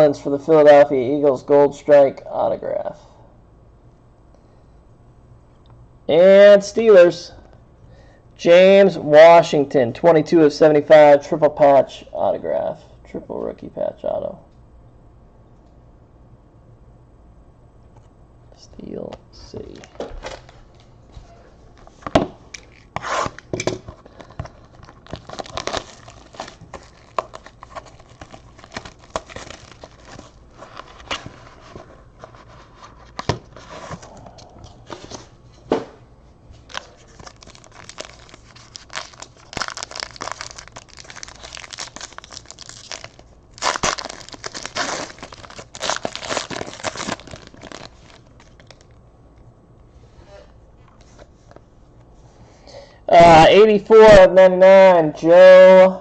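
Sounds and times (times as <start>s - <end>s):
plastic wrapping tearing and crinkling: 22.6s - 31.9s, 36.6s - 49.0s.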